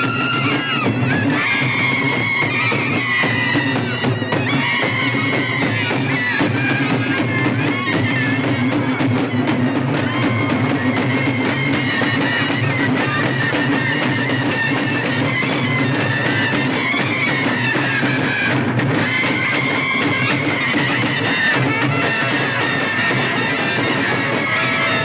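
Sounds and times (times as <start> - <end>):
frame drums beating: 0.0 - 25.0
nasal reed wind melody: 18.9 - 25.0.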